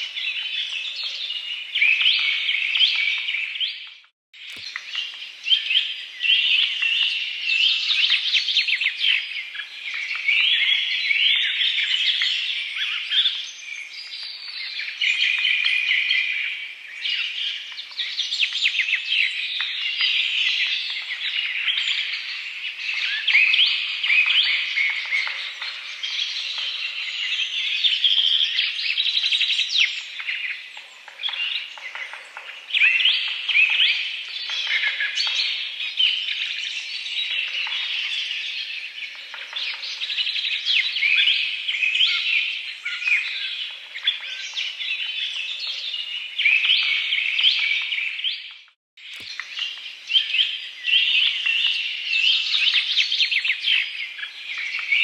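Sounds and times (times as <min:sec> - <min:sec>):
click: 0:04.4 - 0:04.8.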